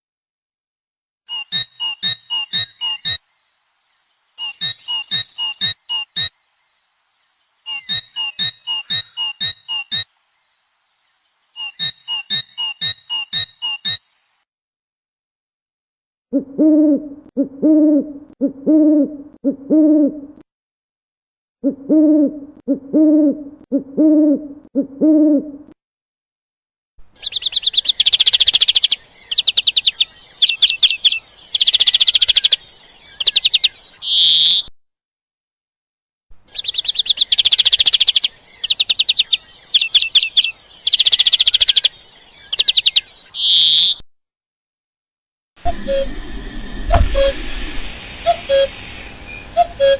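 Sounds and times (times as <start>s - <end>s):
bird singing high trills: 1.3s - 14.4s, 27.2s - 34.7s, 36.5s - 44.0s, 48.2s - 49.9s
owl hooting: 16.4s - 20.4s, 21.6s - 25.7s, 27.2s - 34.7s, 36.6s - 44.0s, 48.2s - 48.7s.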